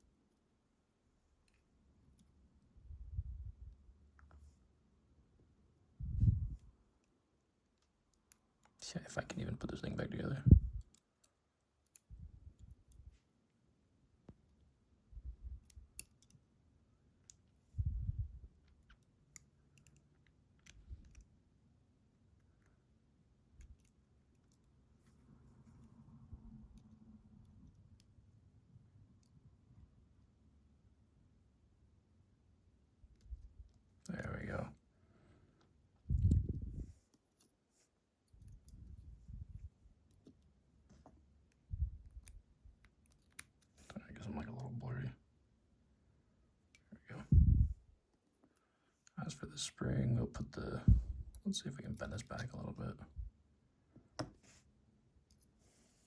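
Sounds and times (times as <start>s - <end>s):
small metallic clicks: 10.8s - 13.1s, 15.6s - 16.5s, 18.6s - 21.4s, 23.5s - 24.8s, 41.5s - 43.9s
small metal parts clicking: 15.6s - 16.4s, 18.6s - 21.3s.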